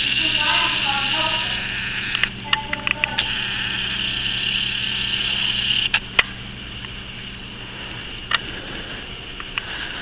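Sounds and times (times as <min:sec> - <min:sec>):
steady low hum: 0:00.0 - 0:10.0
sharp clicks and light taps: 0:02.1 - 0:03.3.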